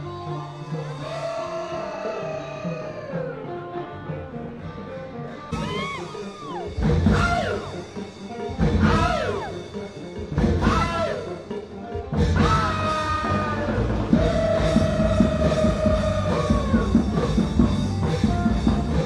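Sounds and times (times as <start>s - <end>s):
band with drums and bass: 0.0s - 19.0s
person singing: 0.1s - 4.0s, 12.4s - 17.4s.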